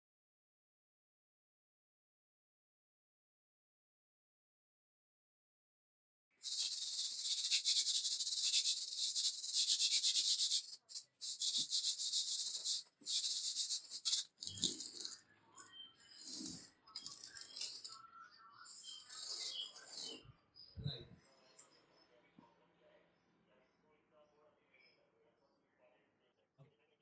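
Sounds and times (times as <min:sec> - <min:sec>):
rasping abrasive strokes on metal: 0:16.0 - 0:18.0.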